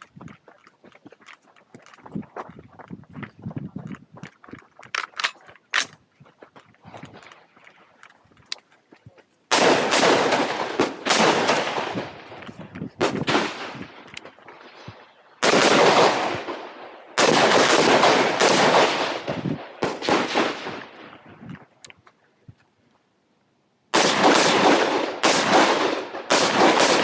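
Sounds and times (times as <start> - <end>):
echoing rifle shots: 9.5 - 21.2, 23.9 - 27.0.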